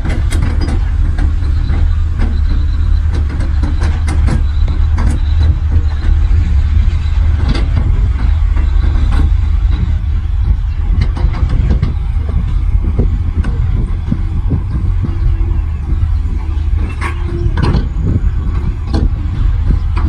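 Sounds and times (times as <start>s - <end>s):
heavy diesel machinery rumble: 0.0s - 20.0s
metal clanks and knocks: 0.0s - 20.0s.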